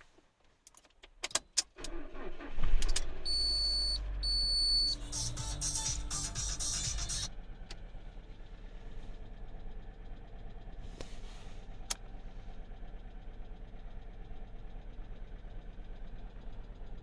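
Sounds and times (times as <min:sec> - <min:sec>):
car engine idling: 0:01.9 - 0:17.0
rhythmic valvetrain ticking: 0:05.1 - 0:07.3.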